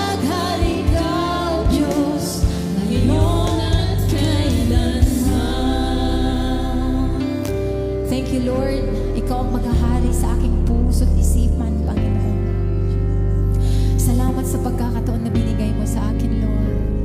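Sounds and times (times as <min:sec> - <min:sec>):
voices singing gospel song: 0:00.0 - 0:08.7
sustained instrumental backing: 0:00.0 - 0:17.0.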